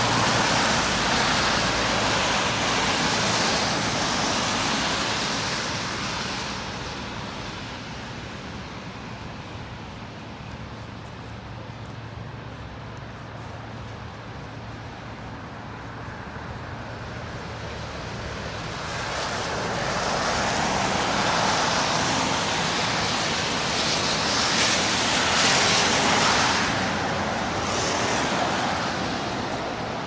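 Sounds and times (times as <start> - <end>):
tyres hissing on slushy road: 0.0 - 10.1, 17.6 - 30.0.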